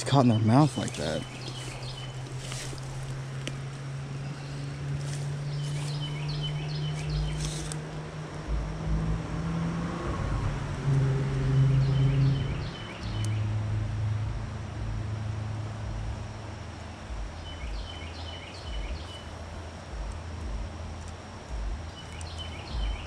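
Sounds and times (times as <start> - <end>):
bird chirping: 0.0 - 3.2, 4.1 - 7.9, 11.4 - 13.5, 16.8 - 20.0, 21.9 - 23.0
low engine-like hum: 0.0 - 23.0.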